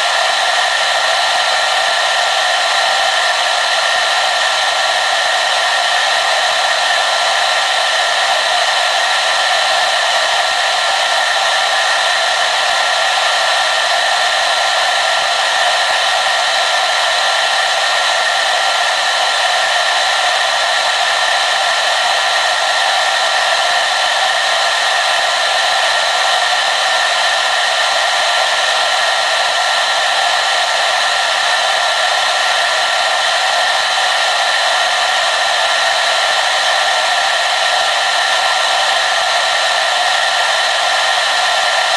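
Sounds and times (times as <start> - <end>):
hair dryer running: 0.0 - 41.9.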